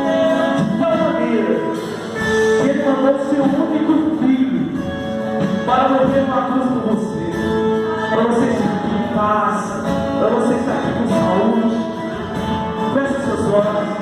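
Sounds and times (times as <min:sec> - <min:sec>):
voices singing gospel song: 0:00.0 - 0:01.9
instrumental accompaniment: 0:00.0 - 0:14.0.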